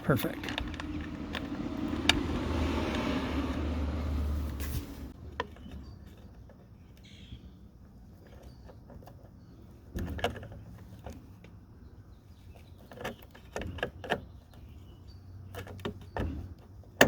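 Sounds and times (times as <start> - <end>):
hand tools clicking and knocking: 0.0 - 3.6.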